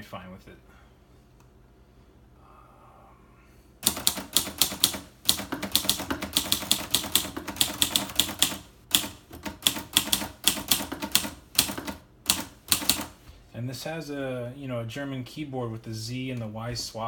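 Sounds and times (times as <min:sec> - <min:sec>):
typewriter keystroke clacks: 0:03.8 - 0:13.2.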